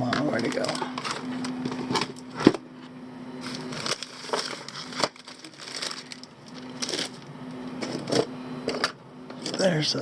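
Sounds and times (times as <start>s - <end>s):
plastic parts clicking and rustling: 3.4s - 7.2s.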